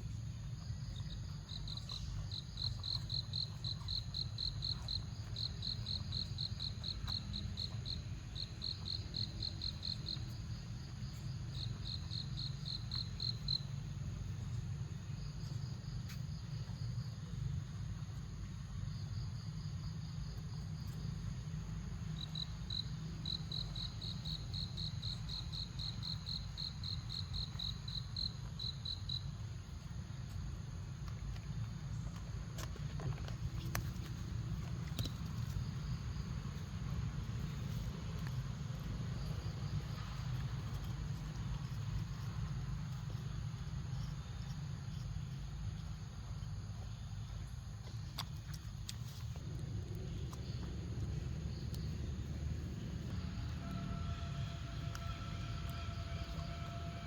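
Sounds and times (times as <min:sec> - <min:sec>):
insects chirping: 0:00.0 - 0:57.0
steady low rumble: 0:45.6 - 0:56.5.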